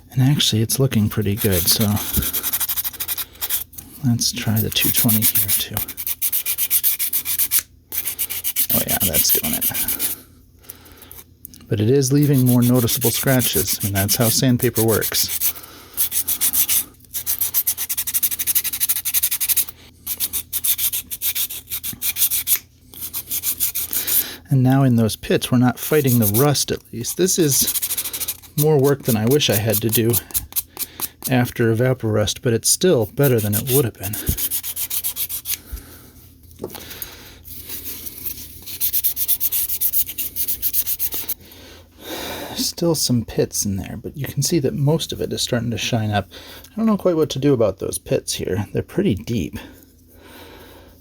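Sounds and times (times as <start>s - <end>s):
sandpaper rubbing on metal: 1.2s - 3.7s, 4.4s - 10.2s, 12.1s - 24.2s, 25.8s - 31.3s, 33.1s - 35.6s, 37.5s - 41.4s.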